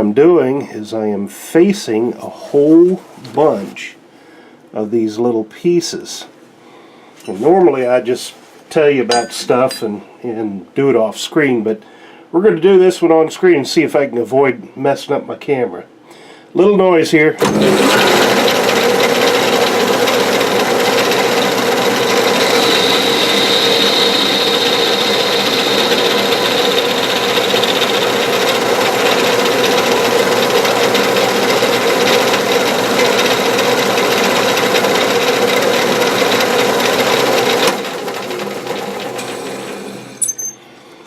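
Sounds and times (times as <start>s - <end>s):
lathe running down: 17.4s - 40.3s
metal lathe cutting: 17.4s - 40.5s.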